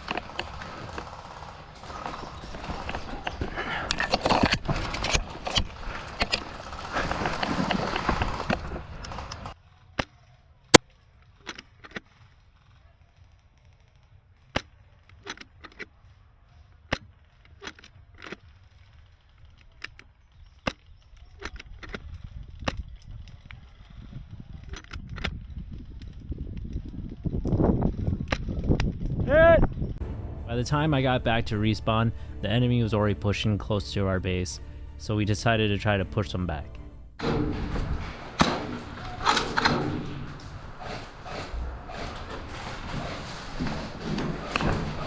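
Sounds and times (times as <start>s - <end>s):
voices: 29.2s - 29.7s, 30.4s - 36.8s.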